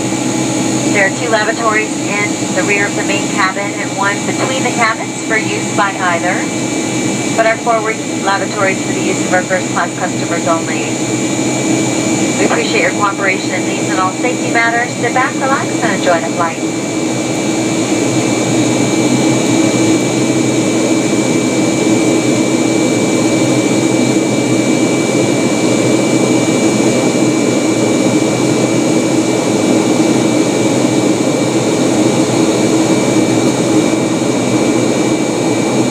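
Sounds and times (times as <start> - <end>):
jet engine cabin noise: 0.0 - 35.9
faint high whine: 0.4 - 17.0.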